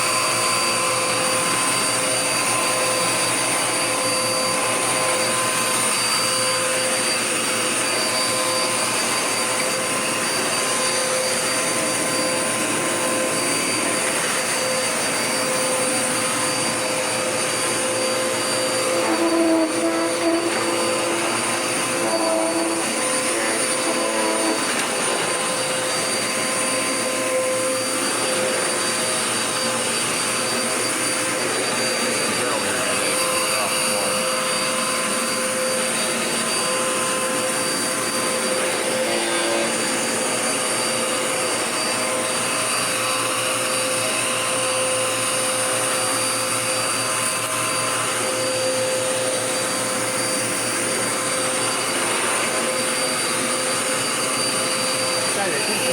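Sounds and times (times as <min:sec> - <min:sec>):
vacuum cleaner running: 0:00.0 - 0:55.9
wavering tones: 0:10.6 - 0:35.8.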